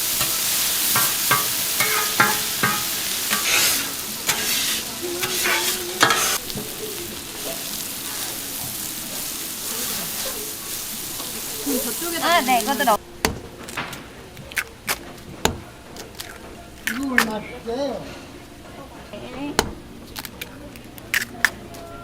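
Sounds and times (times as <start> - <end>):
food sizzling on a griddle: 0.0 - 13.0.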